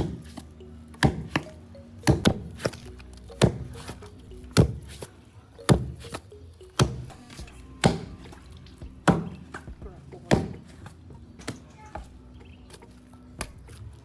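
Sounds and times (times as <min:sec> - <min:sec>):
wooden pestle thudding in mortar: 0:01.0 - 0:05.1, 0:05.7 - 0:06.2, 0:07.8 - 0:10.8.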